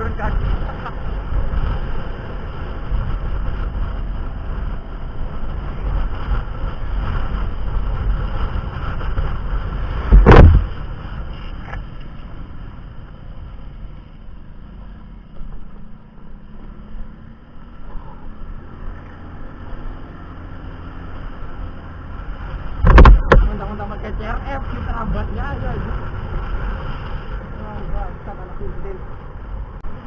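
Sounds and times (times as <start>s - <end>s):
vehicle rumble: 0.0s - 30.0s
loud thump: 10.1s - 10.8s, 22.8s - 23.5s.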